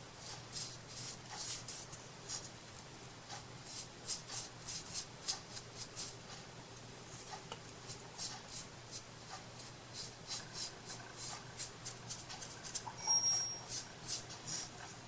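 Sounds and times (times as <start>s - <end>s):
scratchy rubbing strokes: 0.2s - 2.5s, 3.3s - 6.2s, 7.1s - 14.8s
high squeak: 12.9s - 13.8s.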